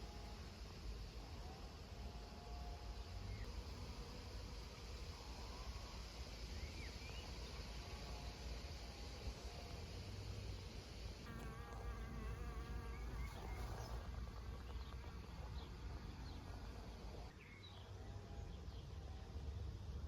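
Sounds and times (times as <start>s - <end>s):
insect buzzing: 6.9s - 17.0s.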